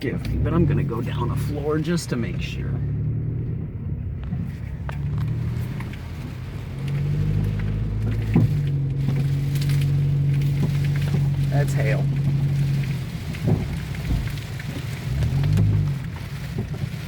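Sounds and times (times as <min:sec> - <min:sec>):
car engine at low revs: 0:00.0 - 0:17.0
hail striking car: 0:03.5 - 0:17.0.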